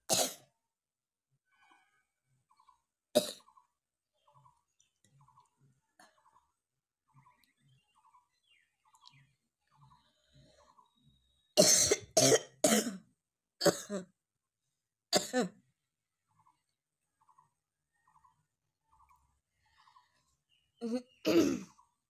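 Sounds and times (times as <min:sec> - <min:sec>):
person coughing: 0:00.1 - 0:00.4, 0:11.6 - 0:13.0, 0:13.6 - 0:14.1, 0:21.3 - 0:21.7.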